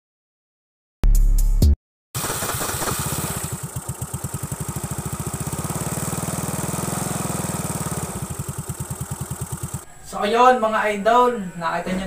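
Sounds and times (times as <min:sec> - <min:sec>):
scooter engine idling: 0:02.2 - 0:11.8.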